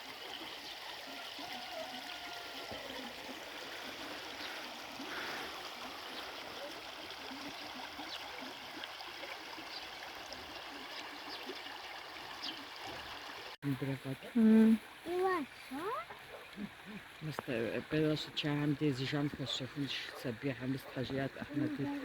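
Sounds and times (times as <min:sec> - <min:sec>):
river flowing: 0:00.0 - 0:22.0.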